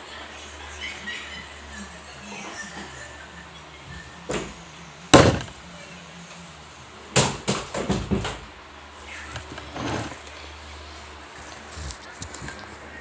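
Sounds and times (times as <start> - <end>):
sharp knocks and bumps: 5.2 - 5.6.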